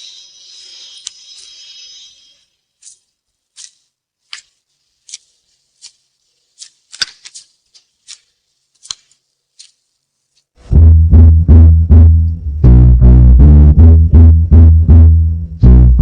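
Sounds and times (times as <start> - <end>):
crisp snapping percussion: 2.8 - 10.5
upright bass: 10.6 - 16.0.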